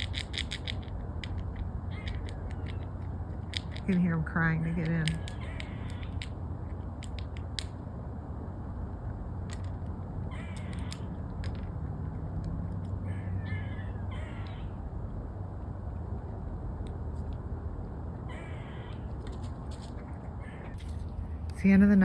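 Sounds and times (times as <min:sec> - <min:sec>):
sharp clicks: 0:00.0 - 0:07.8, 0:09.5 - 0:13.0
low hum: 0:00.0 - 0:22.0
animal whiny cries: 0:05.2 - 0:06.2, 0:10.3 - 0:11.2, 0:13.0 - 0:14.8, 0:18.2 - 0:19.2.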